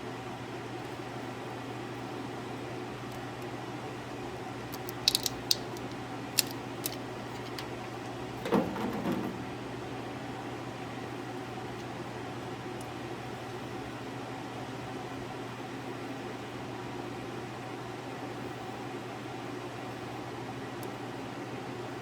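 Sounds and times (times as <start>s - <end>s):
background hum: 0.8s - 14.0s
tools clicking and tapping: 4.7s - 8.1s.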